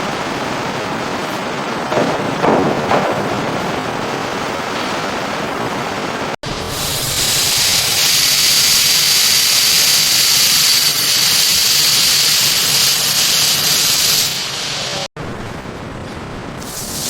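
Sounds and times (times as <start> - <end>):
high spray hiss: 6.5 - 15.1, 16.6 - 17.0.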